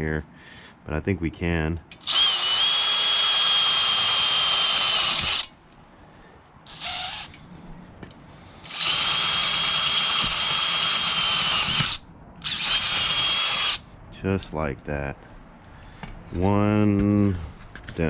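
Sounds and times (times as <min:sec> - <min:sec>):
power drill whining: 0:02.0 - 0:05.5, 0:06.7 - 0:07.4, 0:08.6 - 0:13.8.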